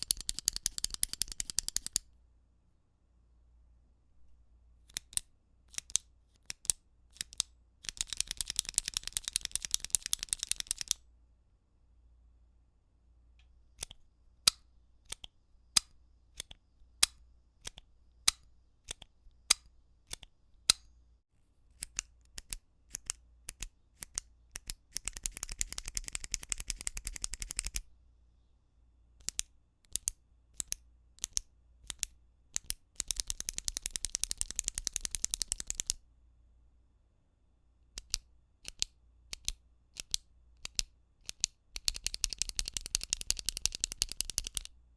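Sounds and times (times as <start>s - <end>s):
retractable pens clicking: 0.0s - 2.0s, 4.9s - 11.0s, 13.8s - 20.3s, 21.8s - 27.8s, 29.2s - 36.0s, 38.0s - 44.7s.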